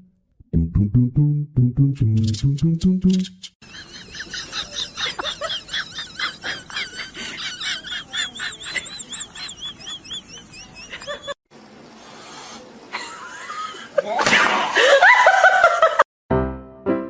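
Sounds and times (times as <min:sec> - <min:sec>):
small animal chirping: 0:02.2 - 0:02.5.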